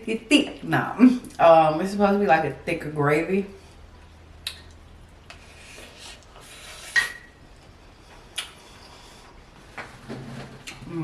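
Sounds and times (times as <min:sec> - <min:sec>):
utensil scraping a plate: 0:05.5 - 0:07.4.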